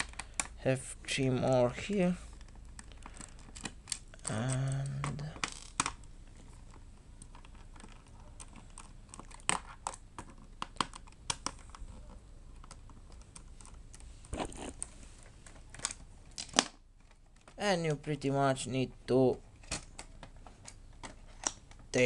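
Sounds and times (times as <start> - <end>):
person murmuring: 4.2 - 5.4.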